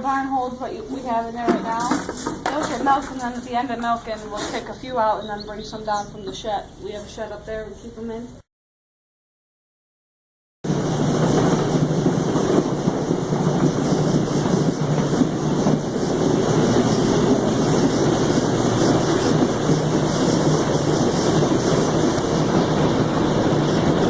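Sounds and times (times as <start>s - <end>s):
farm machinery engine hum: 10.7s - 24.0s.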